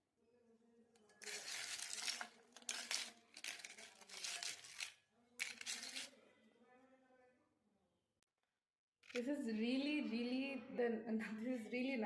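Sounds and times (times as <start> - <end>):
dry crinkling and crackling: 1.2 - 6.1.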